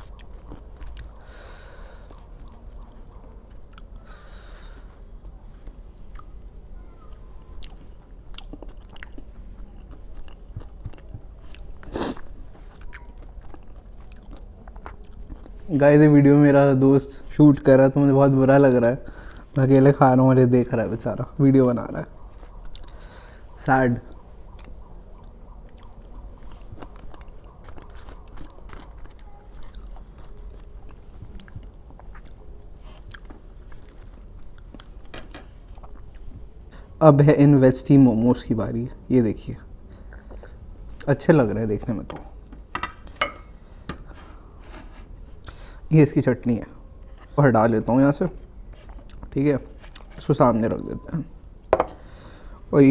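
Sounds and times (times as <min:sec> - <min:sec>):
mouth clicks and crunches: 0:00.0 - 0:06.3, 0:07.4 - 0:15.8, 0:21.6 - 0:23.4, 0:24.0 - 0:36.3, 0:47.0 - 0:50.9
person chewing food: 0:00.0 - 0:06.5, 0:07.1 - 0:15.7, 0:19.0 - 0:19.6, 0:21.6 - 0:36.9, 0:42.3 - 0:45.8, 0:46.8 - 0:52.6.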